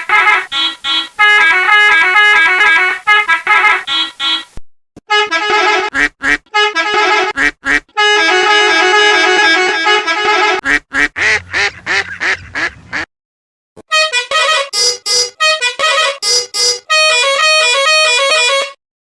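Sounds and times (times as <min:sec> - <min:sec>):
long held horn chord: 0:00.0 - 0:04.1, 0:08.0 - 0:10.6, 0:13.9 - 0:18.8
warbling pitch-wobbling horn: 0:00.0 - 0:04.5, 0:08.0 - 0:10.6, 0:13.9 - 0:18.8
musical bus horn notes: 0:00.0 - 0:10.6, 0:13.8 - 0:18.8.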